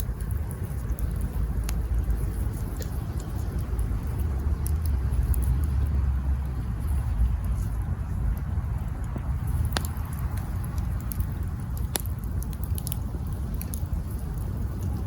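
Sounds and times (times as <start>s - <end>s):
sharp pops of fire: 0.0s - 5.8s, 8.3s - 15.0s
campfire wood crackling: 0.0s - 15.0s
steady low rumble: 0.0s - 15.0s.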